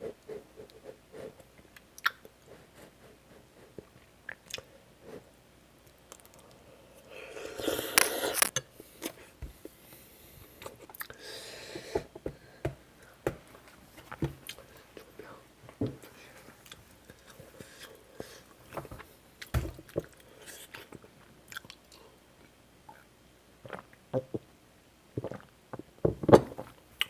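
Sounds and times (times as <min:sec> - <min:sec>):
person chewing with wet smacks: 0:01.8 - 0:02.3, 0:19.4 - 0:22.0.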